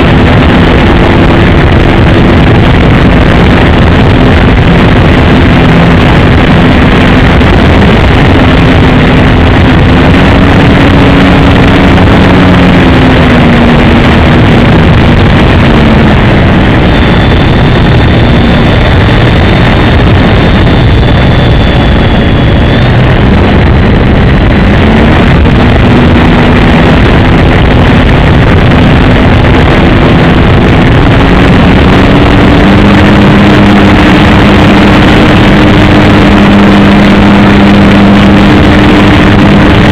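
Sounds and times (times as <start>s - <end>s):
loud steady rushing noise: 0.0s - 39.9s
model plane engine droning: 0.0s - 39.9s.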